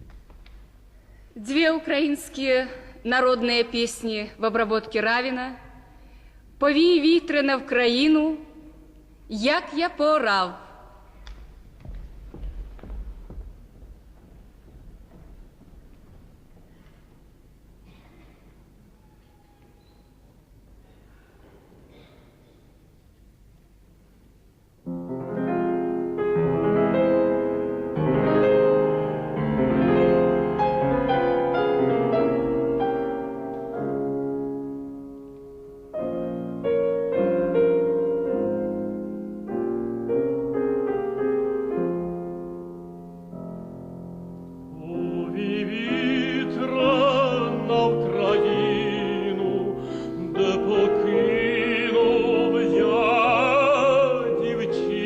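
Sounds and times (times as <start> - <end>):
piano: 0.0 - 5.7, 24.4 - 55.0
operatic tenor singing: 44.7 - 55.0.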